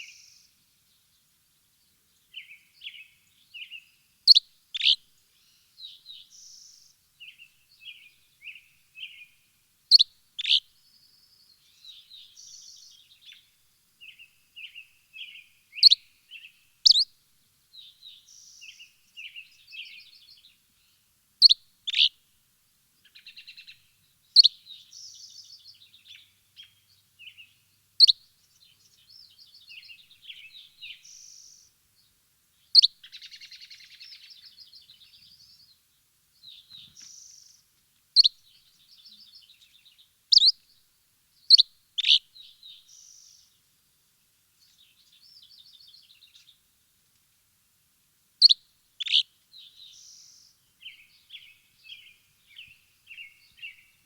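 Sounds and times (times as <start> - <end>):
birds chirping: 9.9 - 10.6, 38.2 - 40.6, 41.5 - 43.4, 48.4 - 54.0
birds twittering trills: 38.2 - 40.6, 41.4 - 43.6, 48.4 - 54.0.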